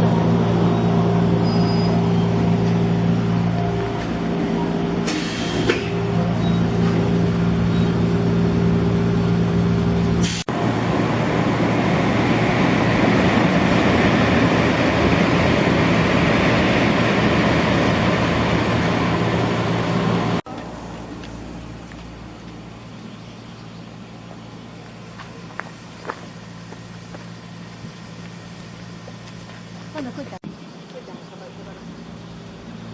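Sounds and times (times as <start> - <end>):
electric train humming: 0.0 - 30.4.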